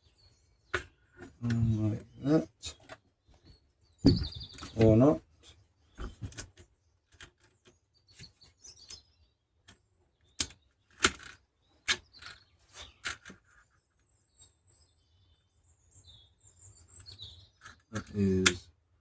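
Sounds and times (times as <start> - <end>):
birds chirping faintly: 0.0 - 19.0
plastic and metal clicks and knocks: 9.6 - 12.4.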